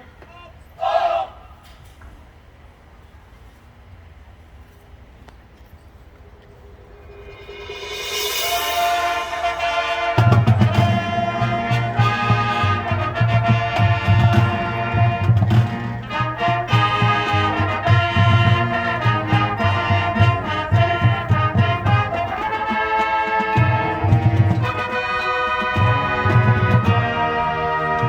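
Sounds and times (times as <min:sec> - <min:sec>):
brass chords: 0:06.6 - 0:28.0
marching drum beat: 0:08.2 - 0:28.0.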